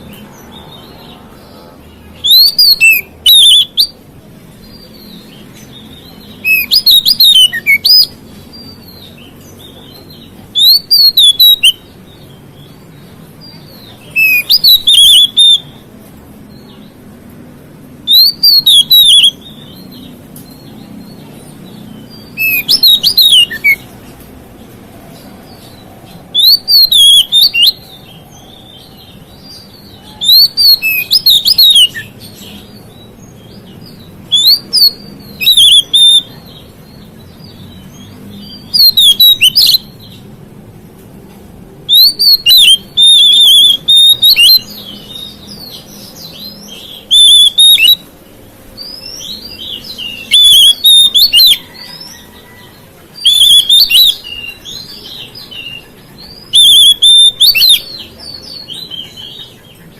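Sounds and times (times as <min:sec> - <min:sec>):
bird whistling and warbling: 0:02.2 - 0:04.0, 0:06.3 - 0:08.2, 0:10.5 - 0:11.8, 0:14.0 - 0:15.7, 0:18.1 - 0:19.6, 0:22.3 - 0:23.9, 0:26.3 - 0:28.0, 0:29.5 - 0:32.7, 0:34.3 - 0:36.3, 0:38.4 - 0:39.8, 0:41.9 - 0:48.1, 0:48.8 - 0:52.6, 0:53.2 - 0:59.8.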